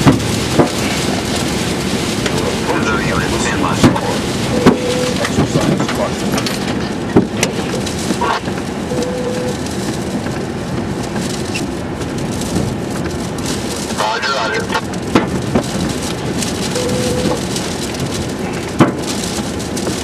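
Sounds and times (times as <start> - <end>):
heavy rain on a vehicle: 0.0 - 20.0
wind: 0.0 - 20.0
brief steady tone: 8.9 - 9.5, 16.8 - 17.4.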